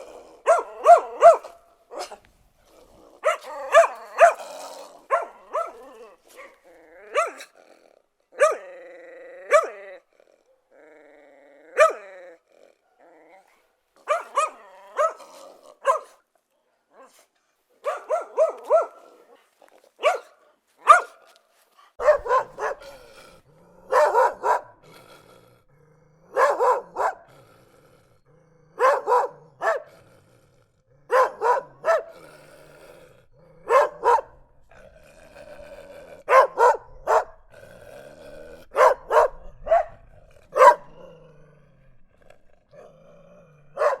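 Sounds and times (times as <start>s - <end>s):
dogs barking angrily: 0.0s - 2.3s, 3.1s - 7.6s, 8.4s - 8.7s, 9.5s - 9.8s, 11.8s - 12.1s, 14.0s - 16.2s, 17.8s - 19.3s, 19.9s - 21.3s, 22.0s - 24.9s, 26.2s - 27.3s, 28.7s - 30.1s, 31.0s - 32.8s, 33.4s - 34.6s, 36.0s - 37.5s, 38.3s - 41.2s, 43.6s - 44.0s.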